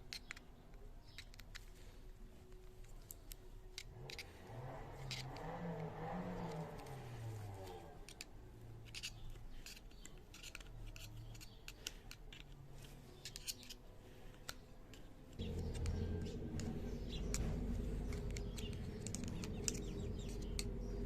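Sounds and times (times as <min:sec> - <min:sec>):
hand tools clicking and snipping: 0:00.0 - 0:01.7, 0:02.5 - 0:21.0
low hum: 0:15.4 - 0:21.0
low rumble: 0:15.4 - 0:21.0.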